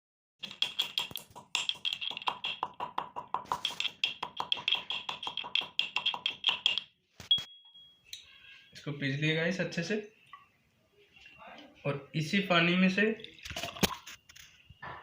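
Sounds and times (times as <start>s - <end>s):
pestle pounding in a mortar: 0.4s - 6.9s.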